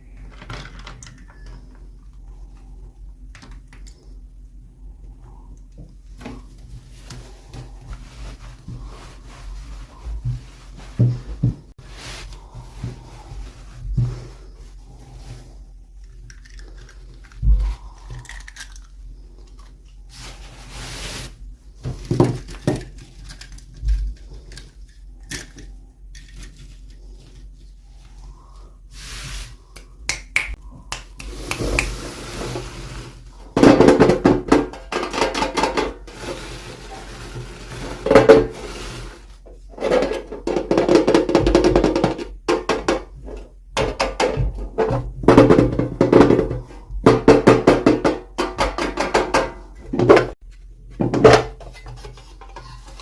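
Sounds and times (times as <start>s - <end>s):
plastic toy packaging rustling: 16.0s - 20.8s, 21.9s - 25.4s.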